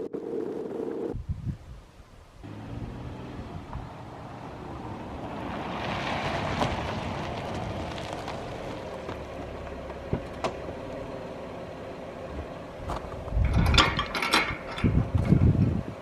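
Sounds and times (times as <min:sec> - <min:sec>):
tyres hissing on wet road: 0:02.5 - 0:09.4.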